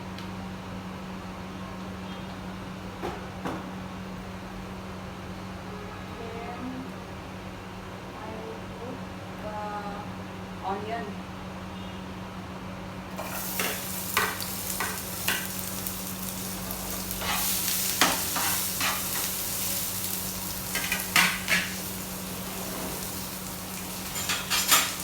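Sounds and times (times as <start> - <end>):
onion sizzling in hot oil: 13.2 - 25.0
utensil scraping in pan: 13.2 - 25.0.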